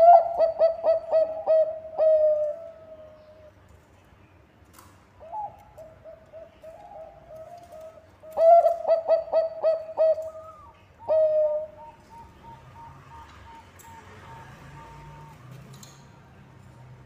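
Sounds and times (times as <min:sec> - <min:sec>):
dove cooing: 0:00.0 - 0:03.5, 0:05.2 - 0:15.4.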